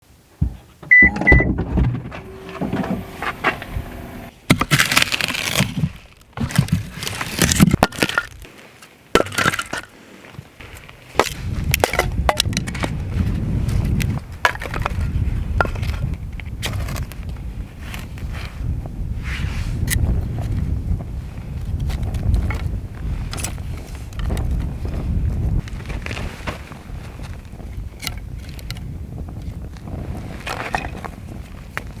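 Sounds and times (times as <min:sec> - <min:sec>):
noisy rustling: 0:00.1 - 0:08.9, 0:10.0 - 0:31.8
wood cracking and snapping: 0:04.5 - 0:08.5.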